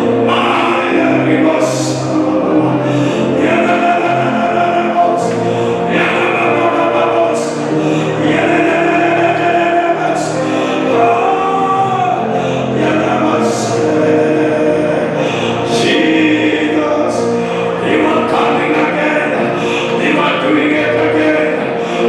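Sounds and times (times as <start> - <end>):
group singing gospel song: 0.0 - 22.0
music accompaniment: 0.0 - 22.0.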